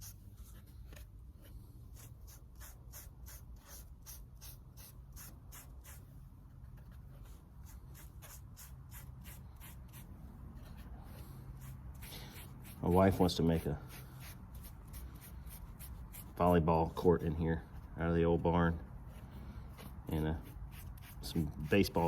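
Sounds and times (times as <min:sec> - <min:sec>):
applicator scratching on wood: 0:07.3 - 0:17.3, 0:19.2 - 0:22.0.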